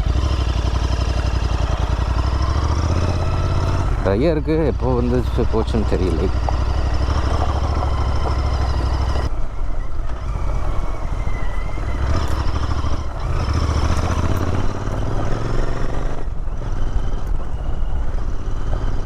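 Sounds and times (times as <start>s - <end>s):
motorcycle engine running: 0.0s - 9.3s, 10.0s - 19.0s.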